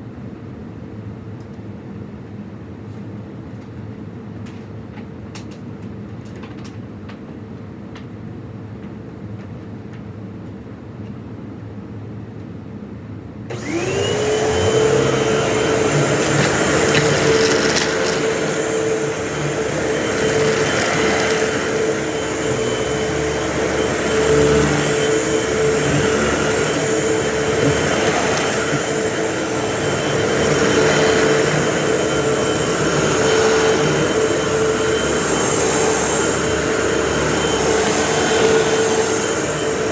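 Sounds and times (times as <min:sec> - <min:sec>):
vacuum cleaner running: 0:13.5 - 0:39.9.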